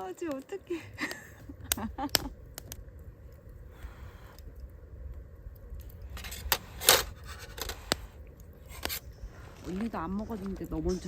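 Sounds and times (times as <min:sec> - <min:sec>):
low steady rumble: 0:00.0 - 0:11.0.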